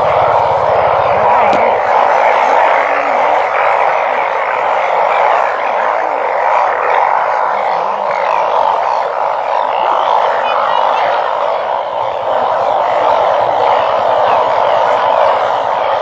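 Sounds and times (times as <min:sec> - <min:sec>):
frogs croaking: 0:00.0 - 0:16.0.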